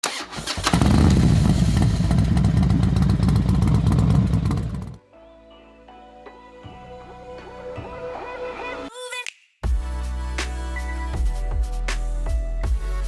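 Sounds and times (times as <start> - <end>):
motorcycle engine running loudly: 0.6 - 5.0.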